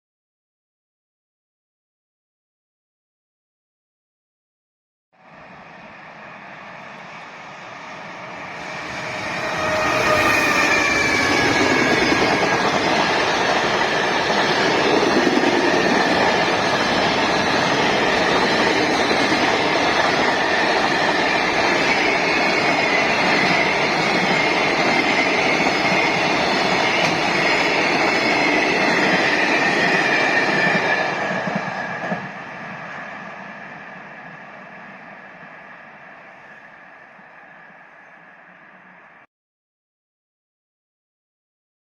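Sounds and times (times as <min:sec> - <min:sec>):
freight train rumbling over rails: 0:05.3 - 0:39.2
high wheel squeal: 0:08.3 - 0:13.5.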